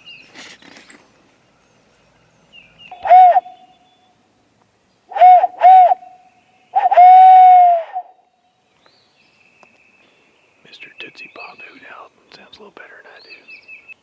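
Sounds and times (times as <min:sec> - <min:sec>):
owl hooting: 0:02.9 - 0:03.7.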